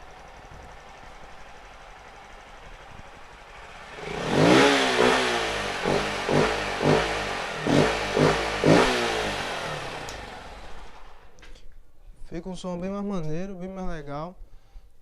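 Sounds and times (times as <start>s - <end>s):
motorcycle engine revving: 0.0s - 11.5s.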